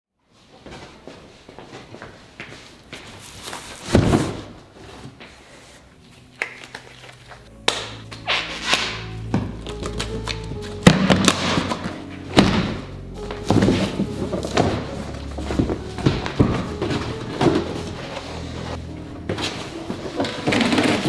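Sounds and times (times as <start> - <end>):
background music with bass line: 7.5 - 21.0.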